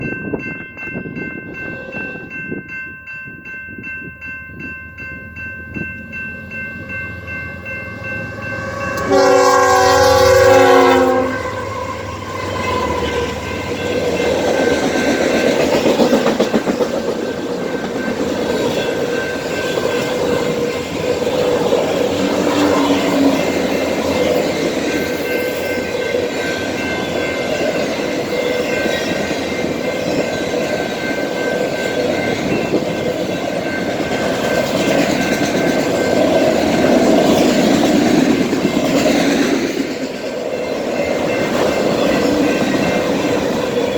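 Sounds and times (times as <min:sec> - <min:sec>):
railroad crossing bell ringing: 0:00.0 - 0:43.9
train wheels roaring on rail: 0:03.4 - 0:43.9
locomotive air horn blast: 0:08.6 - 0:12.3.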